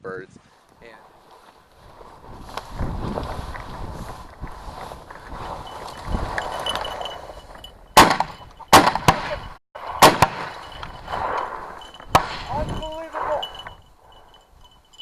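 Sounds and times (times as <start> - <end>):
shotgun shots: 8.0 - 11.4, 12.1 - 12.5.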